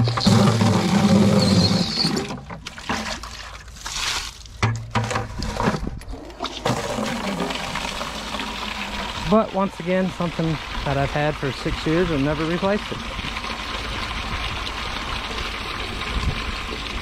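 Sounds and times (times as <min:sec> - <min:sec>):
water pouring and splashing: 0:00.0 - 0:17.0.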